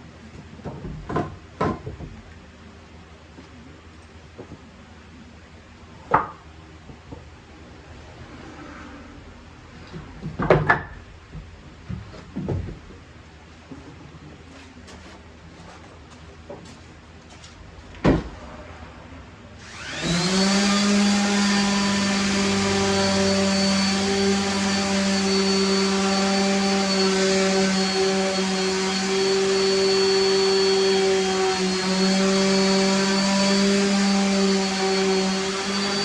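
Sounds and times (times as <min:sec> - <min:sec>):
electric motor whining: 0:19.6 - 0:36.0.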